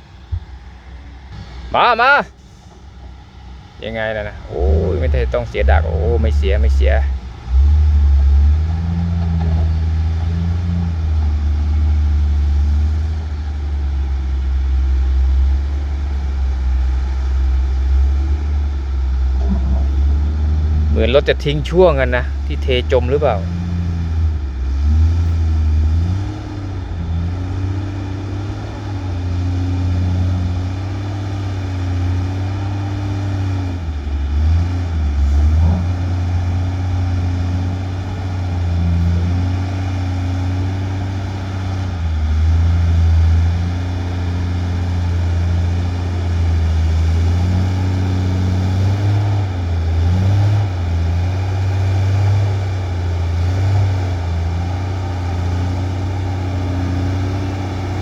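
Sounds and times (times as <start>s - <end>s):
diesel truck engine labouring: 0.0s - 58.0s.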